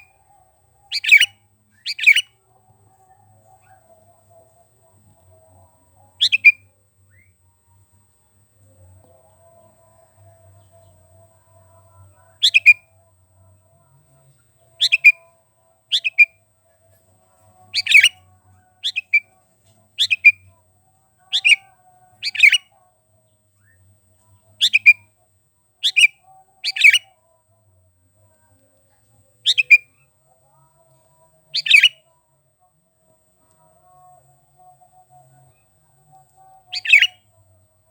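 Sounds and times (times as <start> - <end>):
bulbul chirping calls: 0.9 - 2.3, 6.2 - 6.6, 12.4 - 12.8, 14.8 - 15.2, 15.9 - 16.3, 17.8 - 18.2, 18.8 - 19.2, 20.0 - 20.4, 21.3 - 22.6, 24.6 - 25.0, 25.8 - 27.1, 29.5 - 30.0, 31.6 - 32.0, 36.6 - 37.2.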